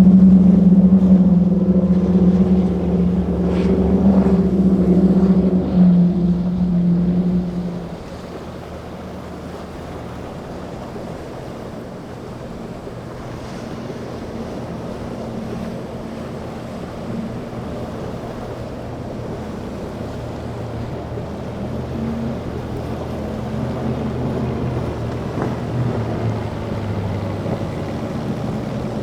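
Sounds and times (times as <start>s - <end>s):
boat engines running: 0.0s - 29.0s
waves washing: 0.0s - 29.0s
wind buffeting microphone: 0.0s - 29.0s.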